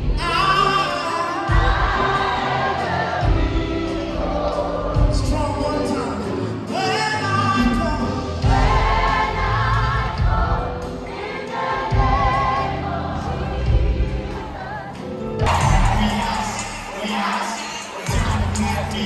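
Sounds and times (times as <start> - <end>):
band accompaniment: 0.0 - 19.0
gospel choir singing: 0.0 - 19.0.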